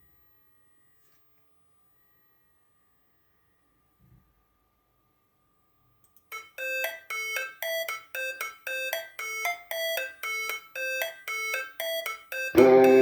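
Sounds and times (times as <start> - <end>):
bell-like synthesizer melody: 12.6 - 13.0.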